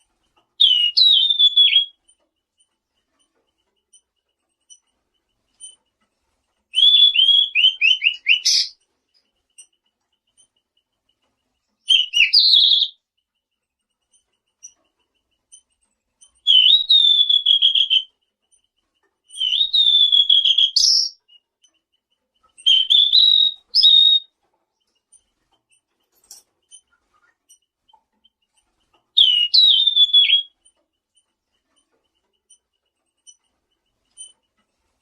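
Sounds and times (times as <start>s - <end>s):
bird whistled song: 0.6s - 2.0s, 6.7s - 8.8s, 11.8s - 13.0s, 16.4s - 18.1s, 19.3s - 21.5s, 22.6s - 24.3s, 29.1s - 30.6s.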